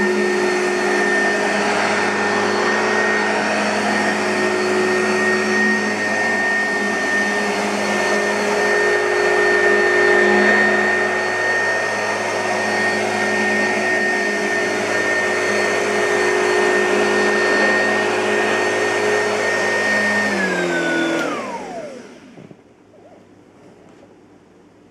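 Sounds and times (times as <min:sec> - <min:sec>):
vacuum motor winding down: 0:00.0 - 0:23.1
vacuum cleaner running with whine: 0:00.0 - 0:24.0.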